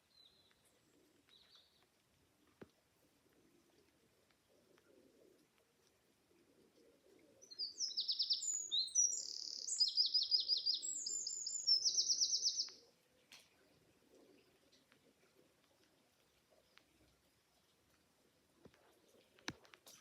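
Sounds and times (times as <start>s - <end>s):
songbird trilling: 7.4s - 12.7s.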